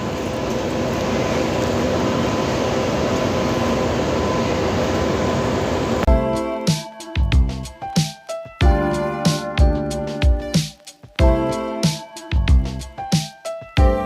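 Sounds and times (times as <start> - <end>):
background music: 6.1 - 14.0.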